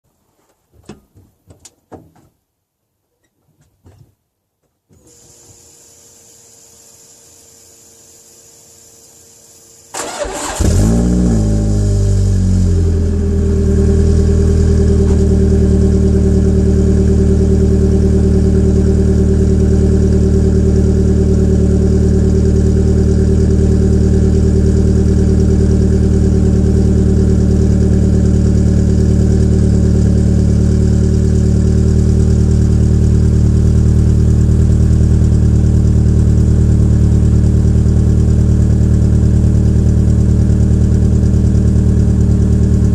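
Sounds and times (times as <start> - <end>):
car engine cranking and starting: 9.9 - 17.0
rough engine idle: 11.9 - 42.9.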